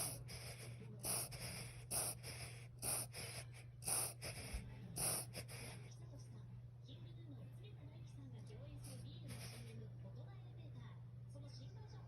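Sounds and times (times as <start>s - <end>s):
person speaking: 0.0s - 5.8s
dog harsh breathing bursts: 0.0s - 5.9s, 8.8s - 9.8s.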